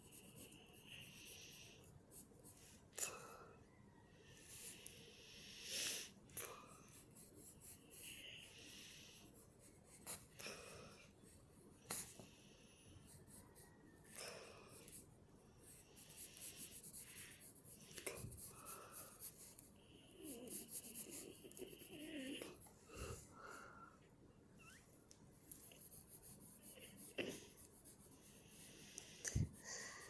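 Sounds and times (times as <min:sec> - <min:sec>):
pencil scratching while drawing: 0:00.0 - 0:02.9, 0:06.5 - 0:23.1, 0:24.7 - 0:30.0
heavy breathing: 0:22.4 - 0:24.1.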